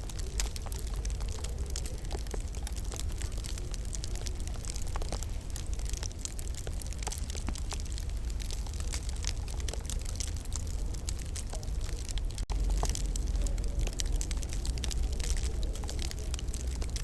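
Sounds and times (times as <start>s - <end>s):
steady low rumble: 0.0s - 17.0s
wood fire crackling: 0.0s - 17.0s.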